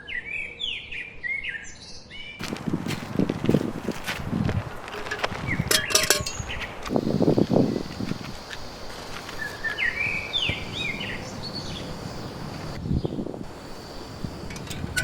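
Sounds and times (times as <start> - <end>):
bird chirping: 5.4 - 15.0.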